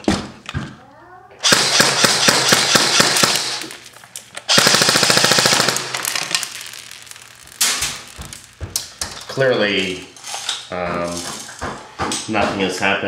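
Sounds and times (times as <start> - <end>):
airsoft rifle firing: 1.4 - 3.8, 4.4 - 6.6.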